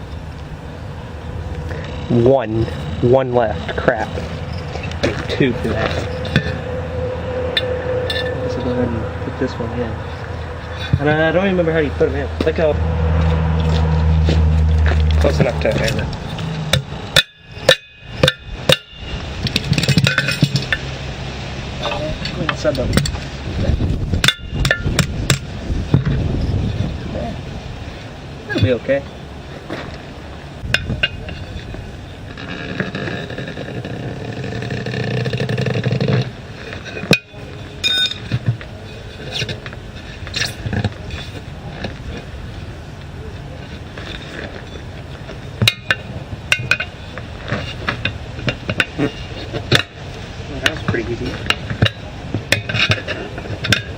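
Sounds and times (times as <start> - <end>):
hammer striking metal: 15.4 - 20.8, 24.2 - 25.4.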